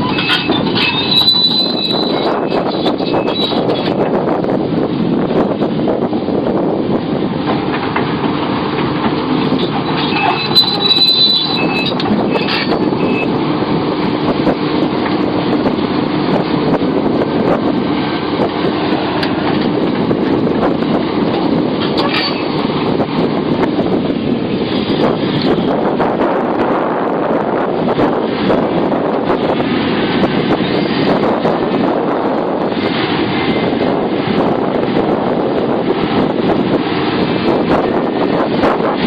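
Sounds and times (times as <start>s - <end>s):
high-pitched squeals: 0.0s - 4.0s, 9.5s - 13.4s
excavator running: 0.0s - 39.0s.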